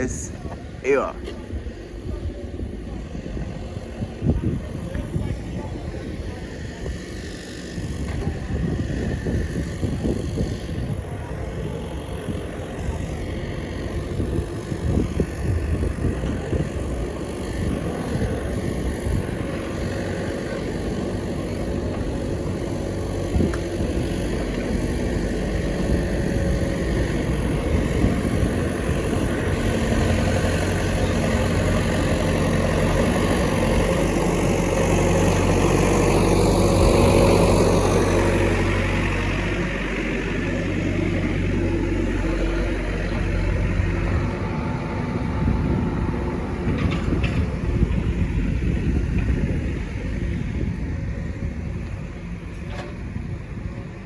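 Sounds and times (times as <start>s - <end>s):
vehicle engine running: 0.0s - 54.0s
wind rumbling on microphone: 0.0s - 54.0s.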